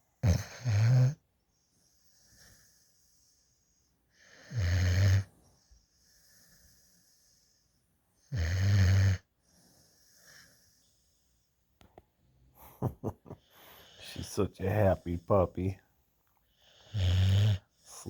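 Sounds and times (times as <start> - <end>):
puppy snoring: 0.2 - 1.2, 4.2 - 7.6, 8.2 - 10.9, 16.6 - 18.0
hissing breaths: 13.4 - 15.6.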